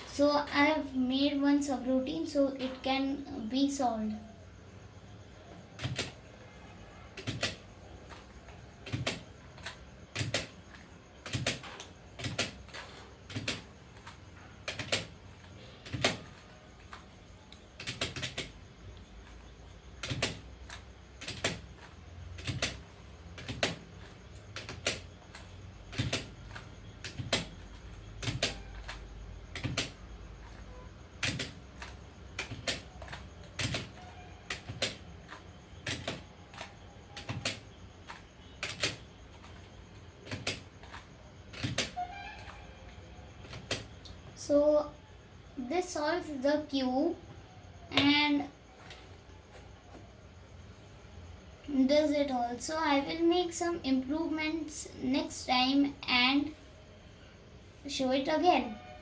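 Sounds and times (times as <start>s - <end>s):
sharp plastic clicks: 7.2s - 44.4s.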